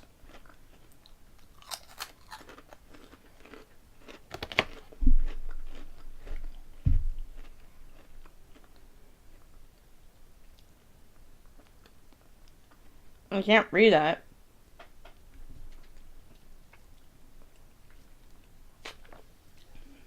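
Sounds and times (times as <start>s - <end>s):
potato chips crunched and chewed: 0.3s - 6.6s
dull low thumps: 5.0s - 7.5s.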